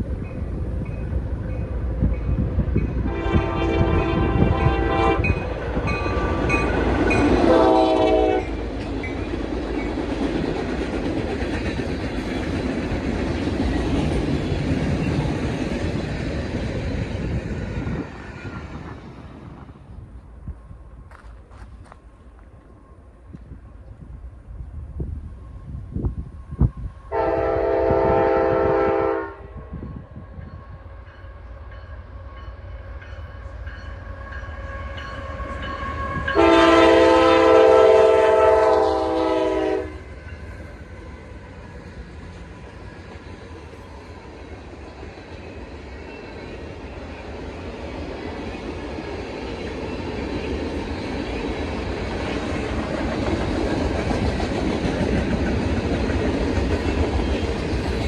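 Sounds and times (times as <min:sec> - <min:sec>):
train rumble: 0:00.0 - 0:58.0
locomotive air horn chord: 0:03.0 - 0:05.4, 0:07.4 - 0:08.6, 0:27.1 - 0:29.6, 0:36.0 - 0:40.0.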